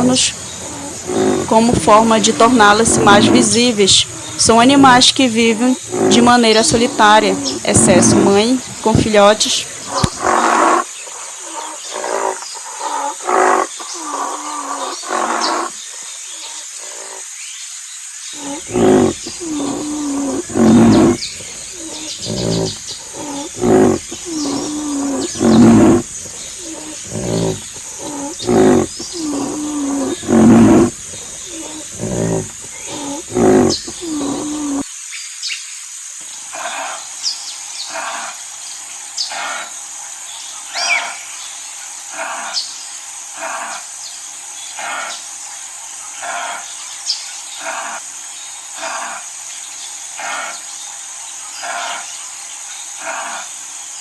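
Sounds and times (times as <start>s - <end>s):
higher animal calls: 0.0s - 10.9s, 18.4s - 34.8s
rhinoceros grunting calls: 0.0s - 15.7s, 18.4s - 34.8s
steady high-pitched hiss: 0.0s - 54.0s.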